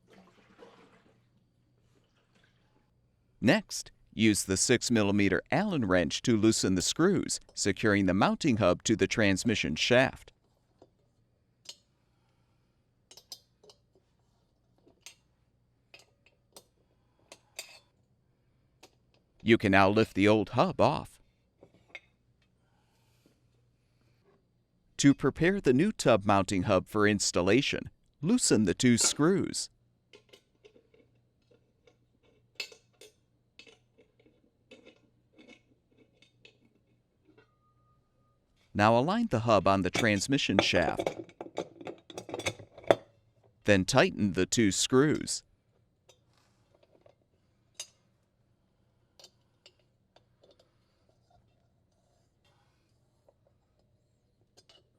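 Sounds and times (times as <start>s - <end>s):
faint metallic clicks and scrapes: 30.1s - 37.6s, 45.7s - 48.3s, 49.1s - 54.9s.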